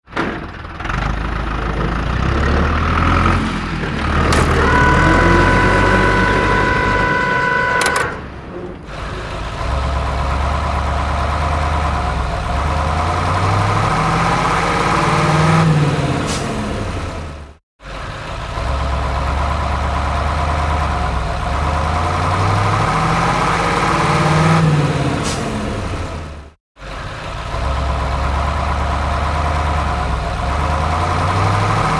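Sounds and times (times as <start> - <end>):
excavator engine running: 0.1 - 13.8
steady beep: 4.3 - 8.3.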